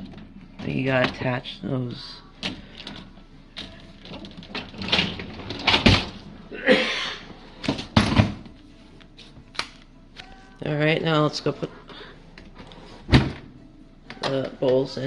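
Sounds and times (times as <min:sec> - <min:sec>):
dishwasher rack scraping slide: 0:03.6 - 0:06.3.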